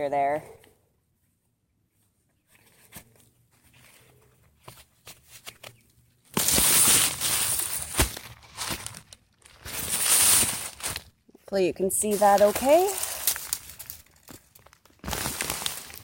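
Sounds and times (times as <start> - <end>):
rustling of dry stalks: 1.2 - 16.0
hands digging in soil: 9.6 - 11.0, 11.6 - 14.0.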